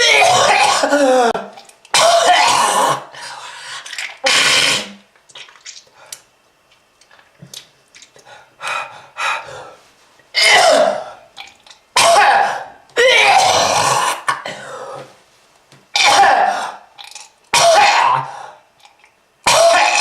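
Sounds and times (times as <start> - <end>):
person clearing throat: 0.0 - 3.1, 10.4 - 11.1, 12.0 - 15.1, 16.0 - 16.8, 17.6 - 18.3, 19.4 - 20.0
person coughing hard: 0.0 - 3.1, 10.4 - 11.1, 12.0 - 15.0, 16.0 - 16.8, 17.5 - 18.4, 19.4 - 20.0.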